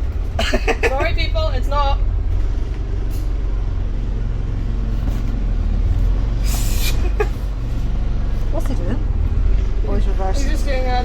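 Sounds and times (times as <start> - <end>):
bus engine running: 0.0 - 11.0
air hiss: 6.4 - 7.1.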